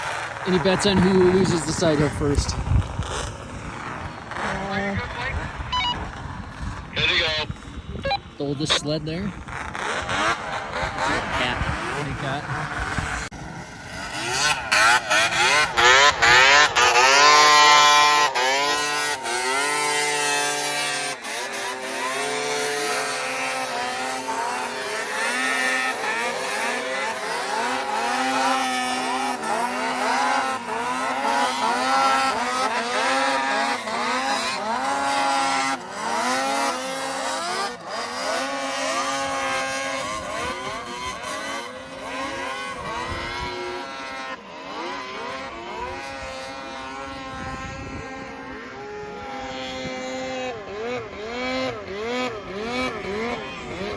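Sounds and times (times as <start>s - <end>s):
snowmobile engines revving: 0.0s - 53.9s.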